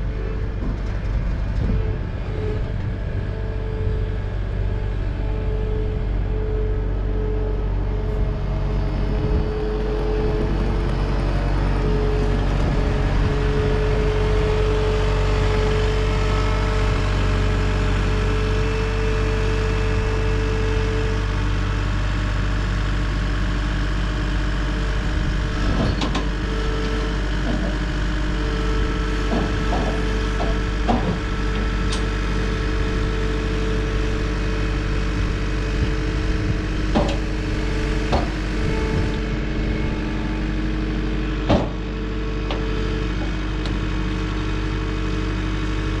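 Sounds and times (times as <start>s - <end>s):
diesel engine running: 0.0s - 46.0s
machine knocks and clanks: 25.6s - 26.3s, 29.3s - 32.1s, 36.9s - 37.4s, 38.1s - 39.2s, 41.4s - 42.6s.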